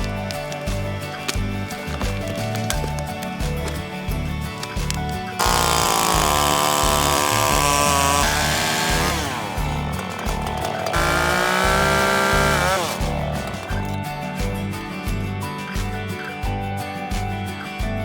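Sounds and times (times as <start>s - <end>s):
two-stroke power tool engine revving: 0.0s - 14.0s
background music with steady beat: 0.0s - 18.0s.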